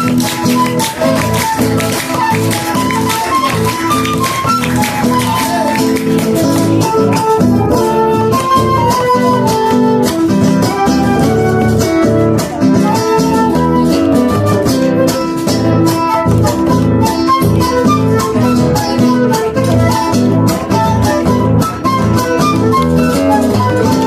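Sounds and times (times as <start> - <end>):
flute melody: 0.0 - 24.0
strummed acoustic guitars: 0.0 - 24.0.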